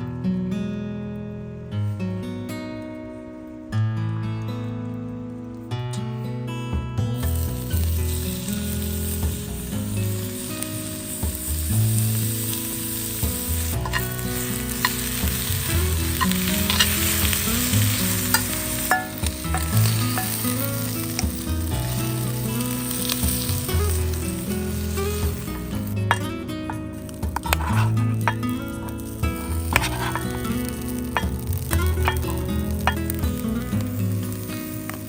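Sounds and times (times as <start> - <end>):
food sizzling in a pan: 7.1 - 35.0
utensil scraping pan: 12.0 - 21.3, 24.7 - 33.4.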